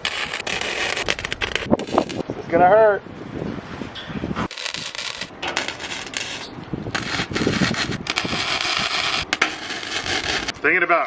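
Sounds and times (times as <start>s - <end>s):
arc welder crackling and hissing: 0.0s - 2.2s, 4.5s - 10.6s.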